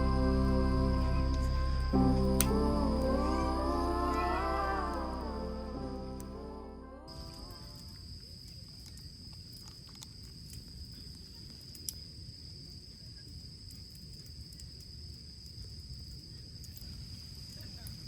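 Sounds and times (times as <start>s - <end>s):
low rumbling background: 0.0s - 7.8s.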